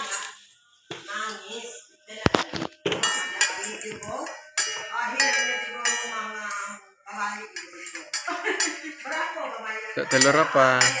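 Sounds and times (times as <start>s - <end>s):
toy pots and pans clattering: 2.2s - 9.4s, 10.0s - 11.0s.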